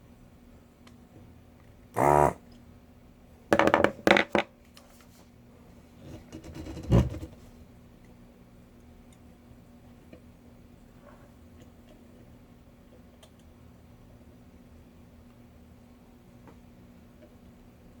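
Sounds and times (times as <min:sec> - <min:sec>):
desoldering vacuum pump buzzing: 0:02.0 - 0:02.5.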